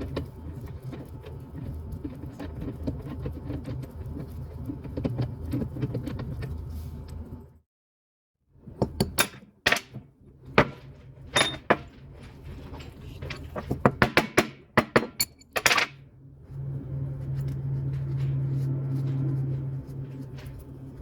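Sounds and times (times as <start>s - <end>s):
metal tools clinking and knocking: 11.3s - 12.0s, 12.7s - 16.0s
steady low hum: 15.6s - 21.0s.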